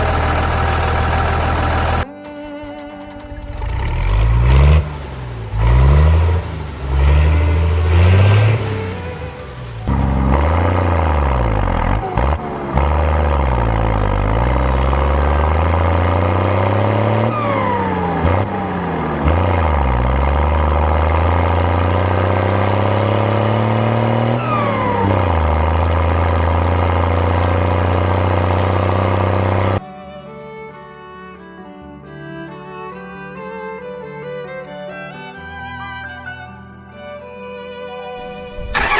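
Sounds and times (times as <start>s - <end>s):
tractor engine revving: 0.0s - 29.8s, 38.2s - 38.9s.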